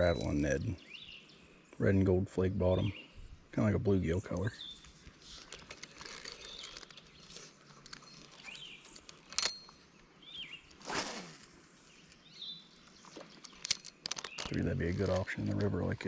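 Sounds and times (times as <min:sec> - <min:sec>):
faint outdoor hiss: 0:00.0 - 0:16.0
small birds chirping: 0:00.0 - 0:16.0
short rustling: 0:10.6 - 0:11.6.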